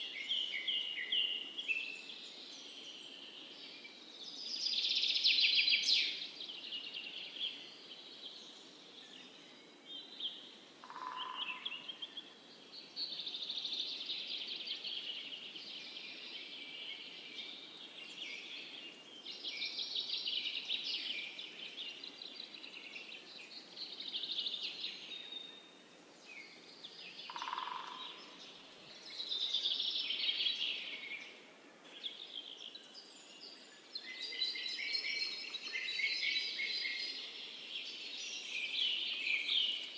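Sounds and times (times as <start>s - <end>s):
faint outdoor hiss: 0.0s - 39.9s
songbird warbling: 27.3s - 28.4s.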